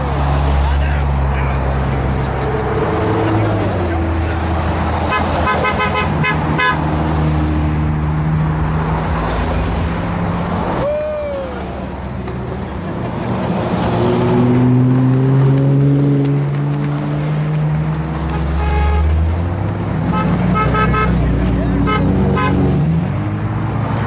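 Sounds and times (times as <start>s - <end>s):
vehicle engines driving past: 0.0s - 24.0s
horn tooting: 5.0s - 6.8s, 18.3s - 19.3s, 20.1s - 22.8s.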